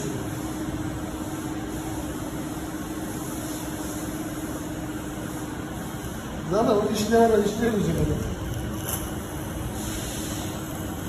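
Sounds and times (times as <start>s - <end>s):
constant machine tone: 0.0s - 11.0s
industrial machinery humming: 0.0s - 11.0s.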